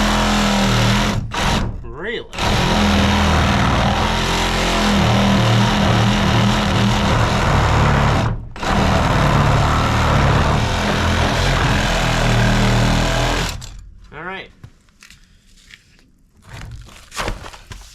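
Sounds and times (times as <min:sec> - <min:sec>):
power tool running: 0:00.0 - 0:13.8.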